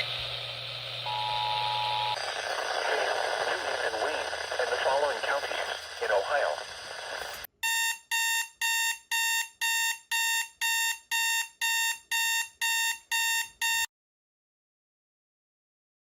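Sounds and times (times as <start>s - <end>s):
shrill electronic alert beeps: 7.6s - 13.9s.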